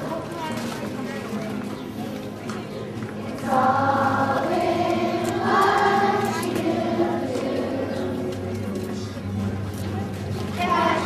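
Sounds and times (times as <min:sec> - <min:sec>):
choir singing long notes: 0:03.4 - 0:08.5, 0:10.6 - 0:11.0.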